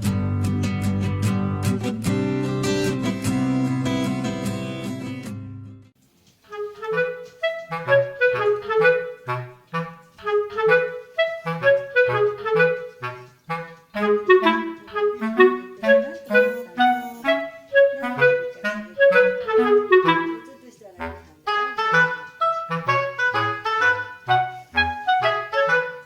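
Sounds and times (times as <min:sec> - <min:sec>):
bouncy clarinet melody: 0:06.5 - 0:26.0.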